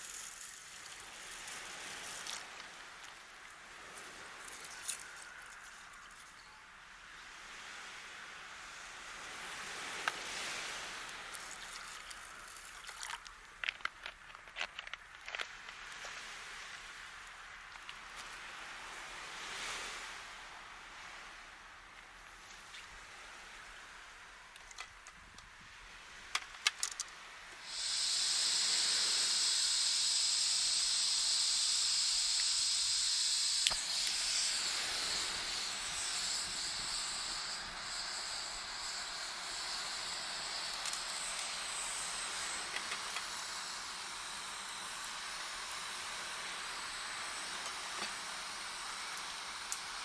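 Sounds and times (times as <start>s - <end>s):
food sizzling in hot pan: 27.6s - 42.7s.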